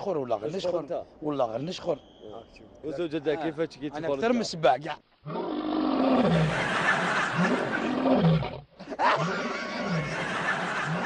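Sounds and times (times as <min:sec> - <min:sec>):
rough growling roar: 0:05.3 - 0:10.2.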